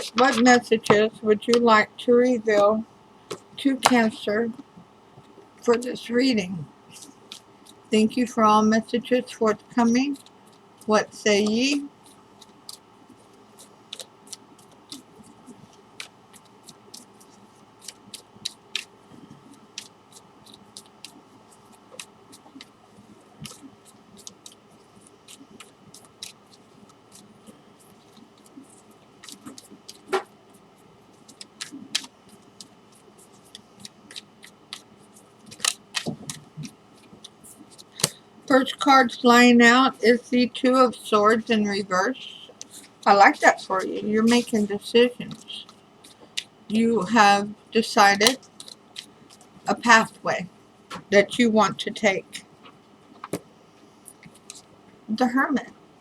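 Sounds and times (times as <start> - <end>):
cards being shuffled: 0.0 - 1.0, 9.8 - 38.2, 48.2 - 49.6.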